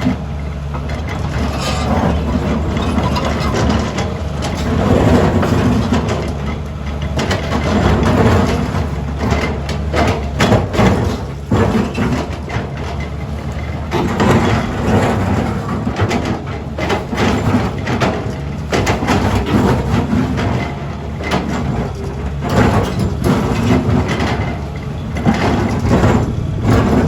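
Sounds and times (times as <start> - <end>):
excavator engine running: 0.0 - 27.0
bucket scraping against rock: 1.4 - 3.0.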